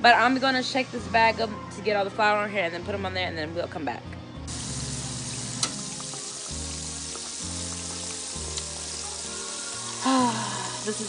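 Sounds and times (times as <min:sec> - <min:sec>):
meat sizzling in hot oil: 0:04.5 - 0:11.0
sharp tick from pan: 0:05.6 - 0:05.8, 0:08.5 - 0:08.7.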